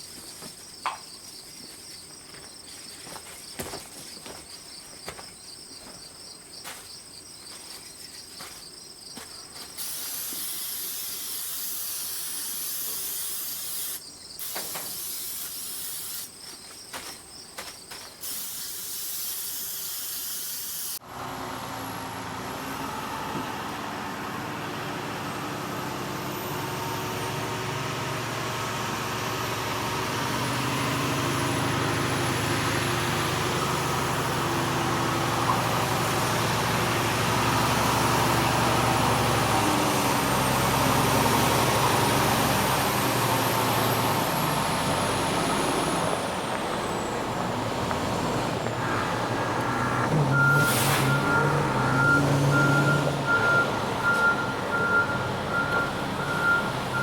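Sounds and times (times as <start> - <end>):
insects chirping: 0.0 - 21.0
loud hiss: 9.8 - 16.4, 18.2 - 21.0, 50.6 - 51.3
heavy engine running with whine: 21.0 - 57.0.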